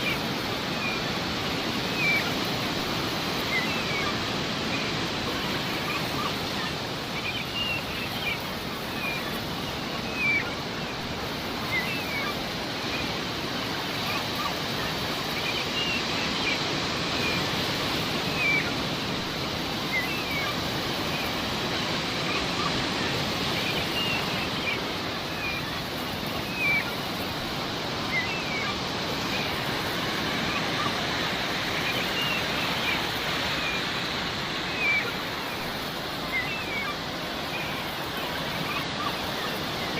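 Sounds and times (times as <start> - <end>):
sea waves washing: 0.0 - 39.9
seagulls crying: 0.0 - 39.9.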